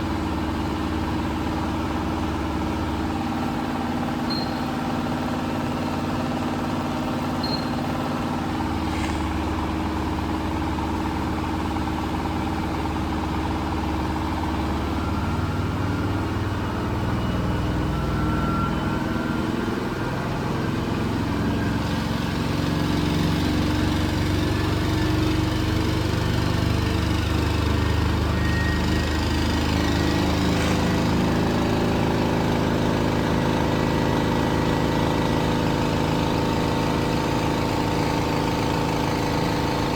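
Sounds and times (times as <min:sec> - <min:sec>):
laundry machine motor hum: 0:19.9 - 0:39.9.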